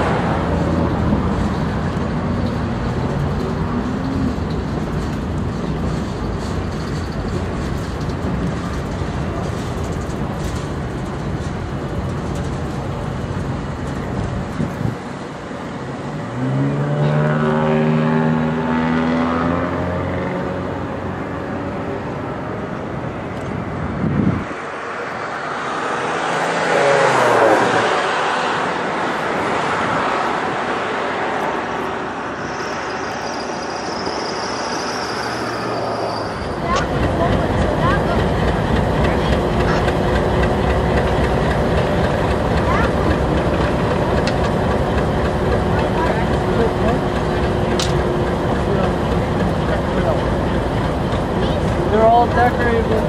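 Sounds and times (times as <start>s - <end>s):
diesel train rumbling: 0.0s - 53.0s
locomotive horn chord: 16.9s - 18.6s.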